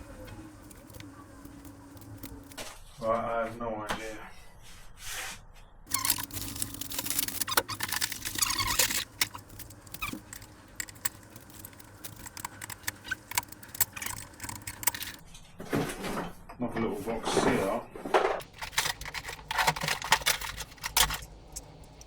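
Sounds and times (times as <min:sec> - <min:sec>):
packaging rustling: 0:00.0 - 0:02.6, 0:05.9 - 0:15.2, 0:18.4 - 0:22.0
small parts clicking and rattling: 0:00.0 - 0:02.6, 0:05.9 - 0:15.2, 0:18.4 - 0:22.0.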